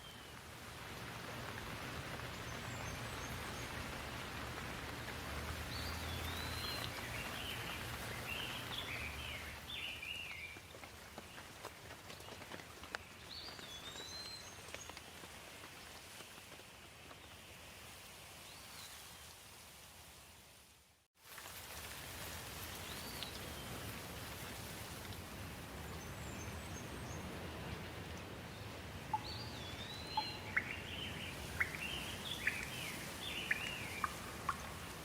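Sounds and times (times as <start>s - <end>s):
steady rain falling: 0.0s - 35.0s
bird chirping: 29.1s - 34.7s.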